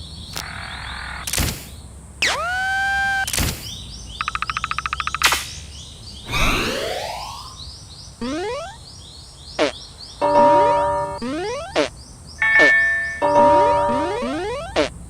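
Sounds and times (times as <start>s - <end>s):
short rising chirps with clicks: 0.3s - 7.6s
long rising glide: 6.2s - 7.6s.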